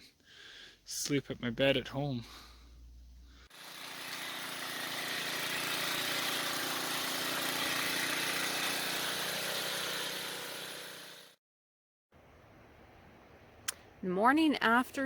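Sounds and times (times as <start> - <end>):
power trowel engine running: 3.5 - 11.4.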